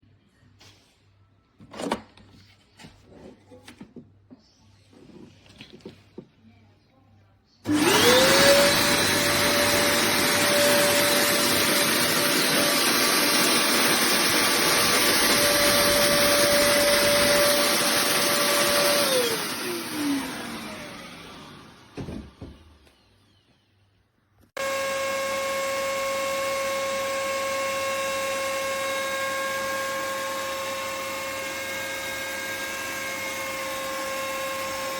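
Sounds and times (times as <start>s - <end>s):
blower motor whine: 7.6s - 23.7s, 24.6s - 34.9s.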